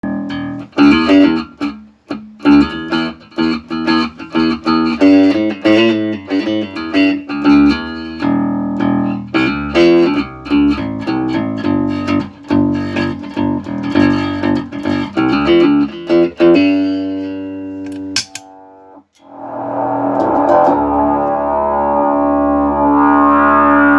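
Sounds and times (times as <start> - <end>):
synthesised bass notes and riffs: 0.0 - 1.8, 2.4 - 23.9
sharp click: 17.8 - 18.5.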